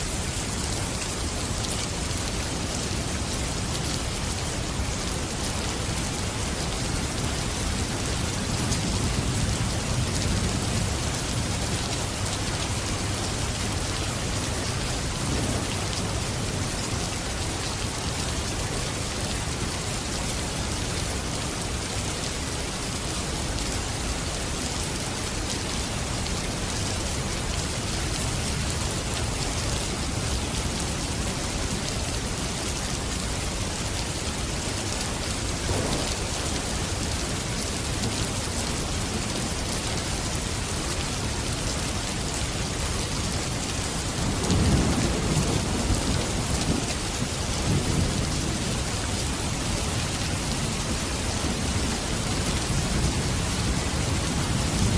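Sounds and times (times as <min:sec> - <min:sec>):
steady rain falling: 0:00.0 - 0:54.9.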